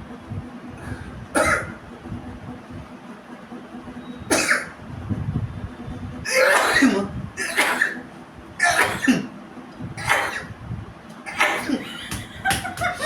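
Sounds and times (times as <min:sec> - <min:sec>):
person sneezing: 0:06.3 - 0:08.0, 0:08.6 - 0:09.3, 0:10.0 - 0:10.5, 0:11.3 - 0:11.9.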